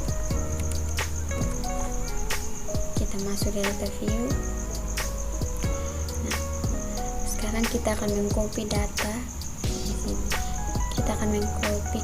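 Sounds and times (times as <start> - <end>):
deep drum hits dropping in pitch: 0.0 - 5.9
held music notes: 0.0 - 12.0.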